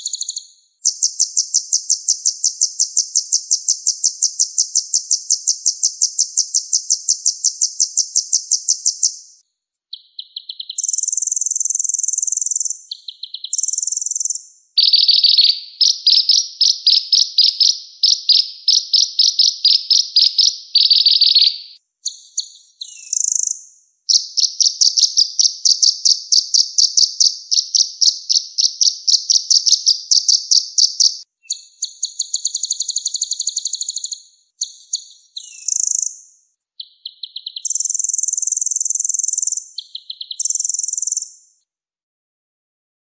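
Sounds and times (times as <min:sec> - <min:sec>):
songbird singing rolling trills: 0:00.0 - 0:41.5
short sharp chirps: 0:31.4 - 0:41.5.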